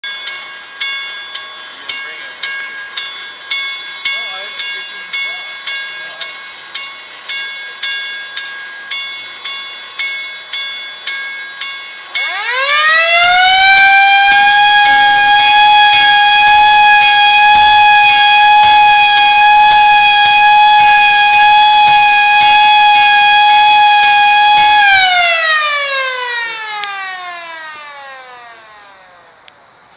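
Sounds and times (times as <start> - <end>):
ringing strikes: 0.0 - 13.7
siren winding up and down: 12.1 - 29.5.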